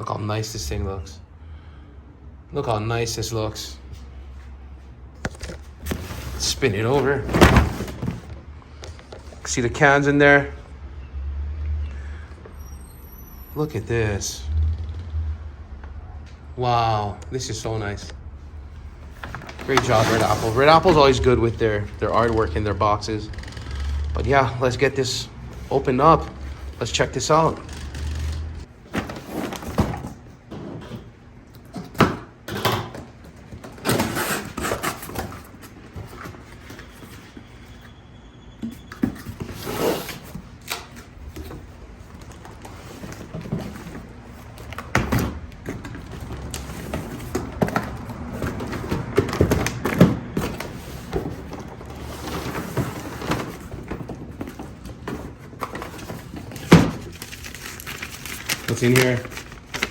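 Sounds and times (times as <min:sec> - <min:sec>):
cardboard scraping and rustling: 0:05.2 - 0:09.4, 0:19.1 - 0:23.1, 0:25.6 - 0:31.2, 0:33.0 - 0:37.9, 0:38.8 - 0:59.9.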